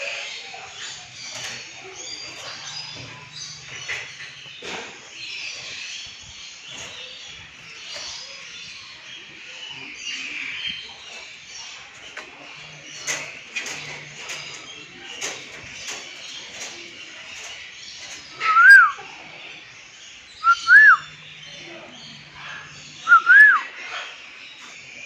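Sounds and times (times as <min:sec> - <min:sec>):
aviary birds chirping: 0:00.0 - 0:25.0.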